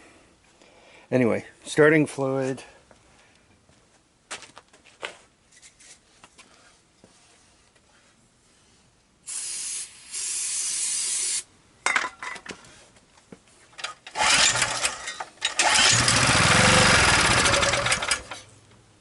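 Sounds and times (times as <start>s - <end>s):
aerosol can spraying: 9.2s - 11.5s
recoil starter pull: 13.8s - 18.5s
small generator engine running: 14.1s - 18.5s.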